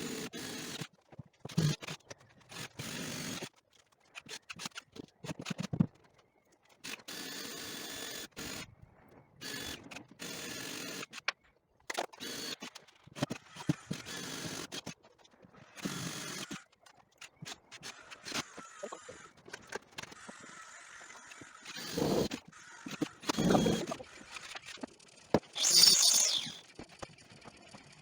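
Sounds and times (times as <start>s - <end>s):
power tool running: 20.2s - 24.2s, 25.5s - 26.7s.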